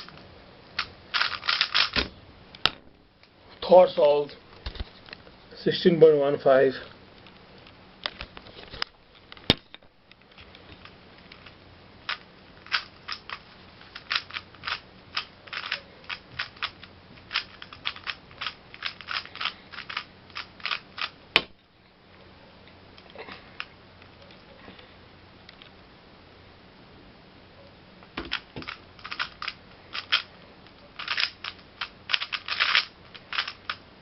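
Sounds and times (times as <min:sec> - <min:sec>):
puzzle cube plastic clacks: 0:00.8 - 0:02.0, 0:10.2 - 0:21.2, 0:28.2 - 0:30.3, 0:31.0 - 0:33.8.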